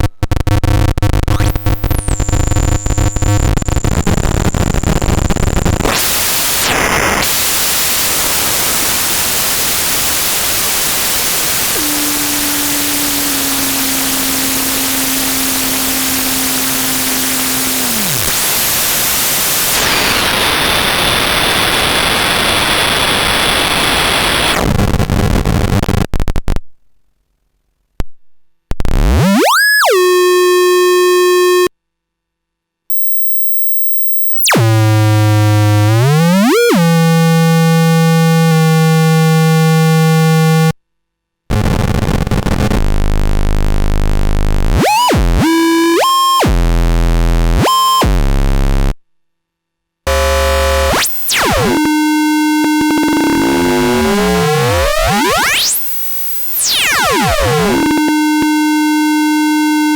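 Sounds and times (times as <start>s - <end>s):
buzzing square-wave tone sweeping up: 0.0s - 26.3s, 28.8s - 31.7s, 32.9s - 40.8s, 41.5s - 49.0s, 50.1s - 59.9s
static hiss: 0.0s - 26.5s.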